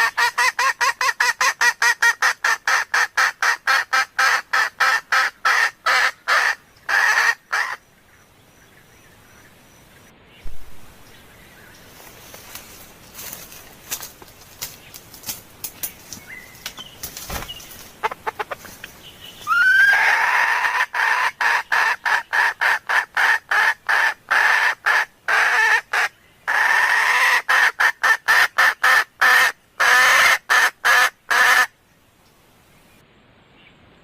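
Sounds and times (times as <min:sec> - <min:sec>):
hen clucking: 0:00.0 - 0:07.8, 0:17.3 - 0:31.7.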